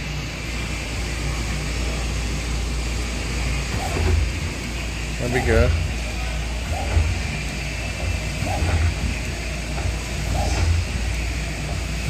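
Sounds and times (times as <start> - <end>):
machinery humming: 0.0 - 12.0.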